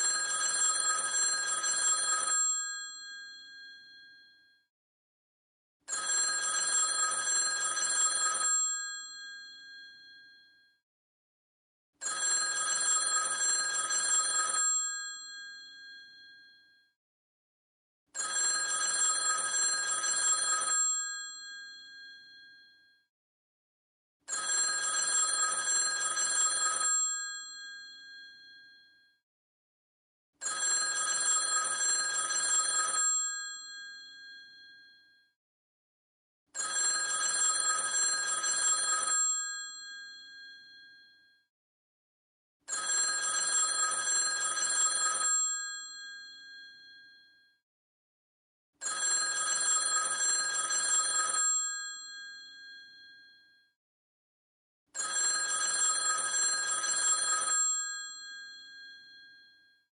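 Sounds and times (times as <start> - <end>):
telephone bell ringing: 0.0 - 4.5, 5.9 - 10.7, 12.0 - 16.9, 18.2 - 22.9, 24.3 - 29.1, 30.4 - 35.3, 36.6 - 41.4, 42.7 - 47.6, 48.8 - 53.5, 55.0 - 59.9.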